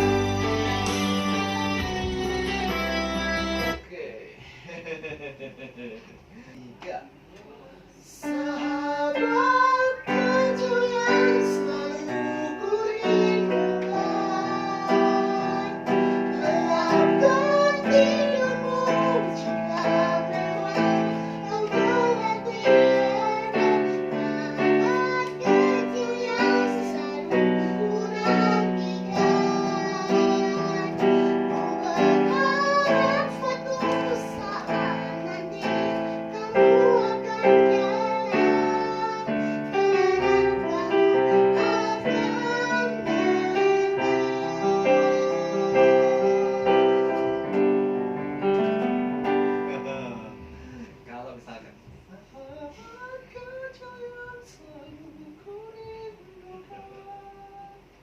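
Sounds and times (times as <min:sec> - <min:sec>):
piano playing chords: 0:00.0 - 0:03.8, 0:08.3 - 0:51.2
child singing: 0:08.0 - 0:47.6.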